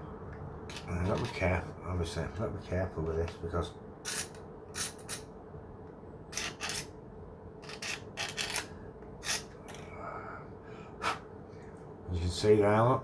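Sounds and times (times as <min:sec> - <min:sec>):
craft knife scraping plastic: 0:00.7 - 0:01.4, 0:06.4 - 0:06.9, 0:07.6 - 0:09.6.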